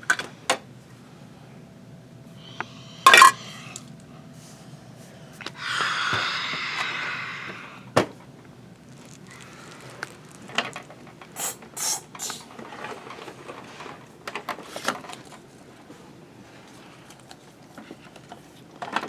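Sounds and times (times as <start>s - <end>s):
short hisses: 11.4s - 12.5s.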